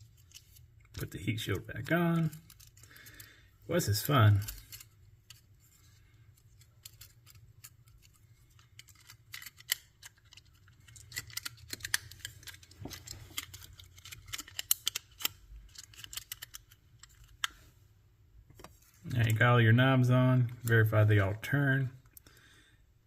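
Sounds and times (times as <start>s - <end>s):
small plastic parts clicking: 1.7s - 3.3s, 6.3s - 17.6s.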